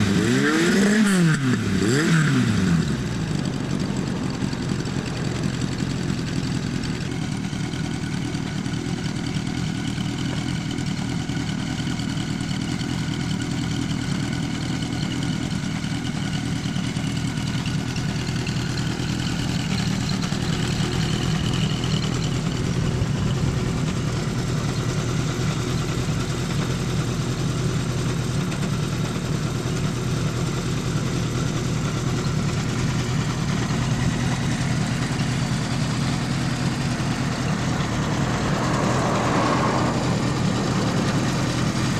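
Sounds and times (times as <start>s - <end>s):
motorcycle engine revving and idling: 0.0s - 41.9s.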